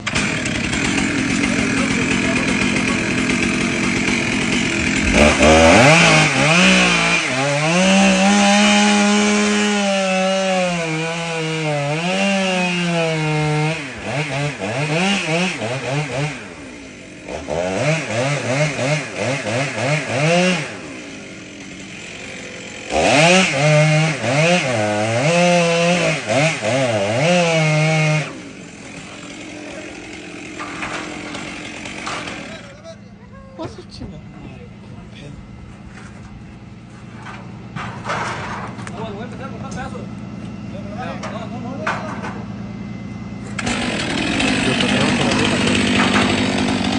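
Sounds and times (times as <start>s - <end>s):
chainsaw revving: 0.0s - 32.9s, 43.5s - 46.9s.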